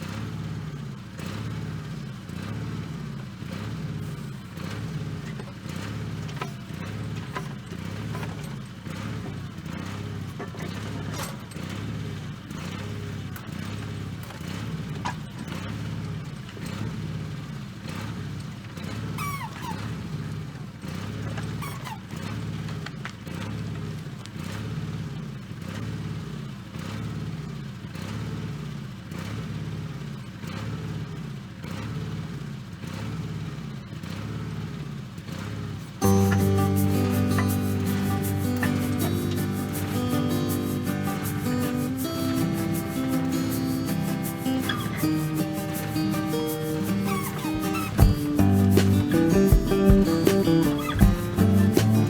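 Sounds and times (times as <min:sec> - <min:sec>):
backhoe engine running: 0:00.0 - 0:25.3, 0:35.9 - 0:52.0.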